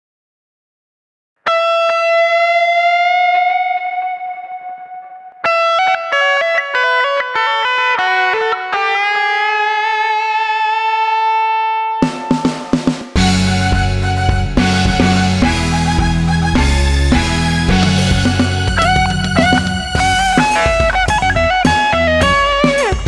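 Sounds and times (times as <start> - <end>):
electric guitar lead: 1.5 - 23.0
drums and bass: 12.0 - 23.0.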